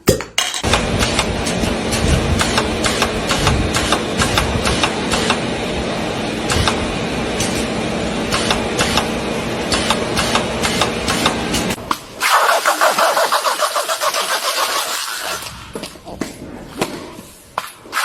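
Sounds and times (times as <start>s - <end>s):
rapid clicks and rattles: 0.6s - 5.4s
machine humming: 0.6s - 11.9s.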